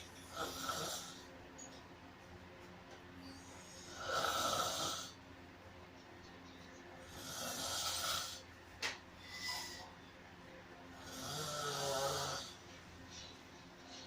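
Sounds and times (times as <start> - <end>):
rasping snoring breaths: 0.3 - 1.3, 3.4 - 5.2, 7.1 - 8.4, 11.0 - 12.6.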